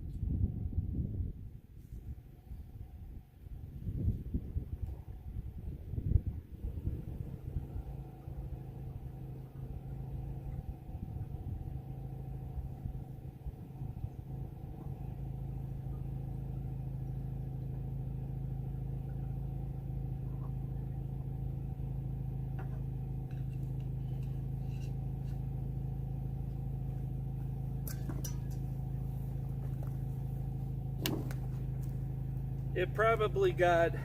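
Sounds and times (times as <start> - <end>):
engine idling: 1.3 - 34.0
sharp clicks and knocks: 31.0 - 32.0.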